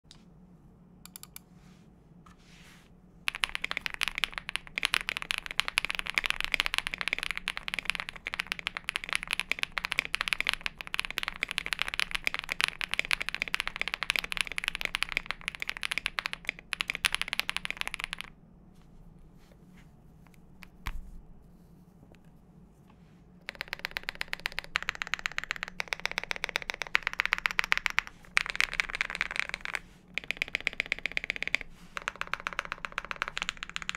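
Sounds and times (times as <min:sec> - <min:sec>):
mechanical keyboard typing: 0:03.3 - 0:18.3, 0:23.4 - 0:33.9.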